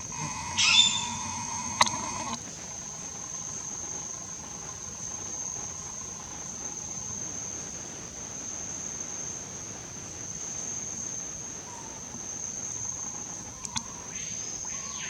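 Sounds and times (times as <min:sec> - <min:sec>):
high-pitched insect drone: 0:00.0 - 0:02.4.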